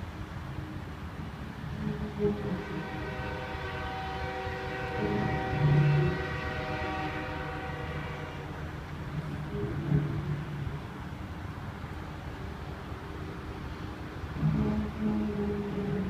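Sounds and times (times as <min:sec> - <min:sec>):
distant train horn tone: 0:01.7 - 0:10.6, 0:14.3 - 0:16.0.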